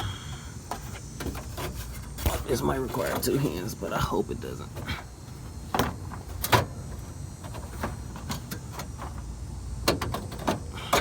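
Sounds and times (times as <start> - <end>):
parts knocking and clicking: 5.7 - 11.0.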